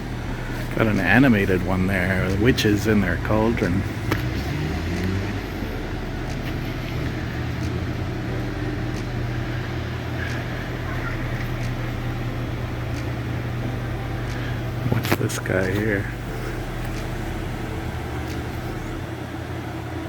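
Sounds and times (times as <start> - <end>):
road traffic rumble: 0.0 - 20.0
faint clicks: 8.9 - 17.5.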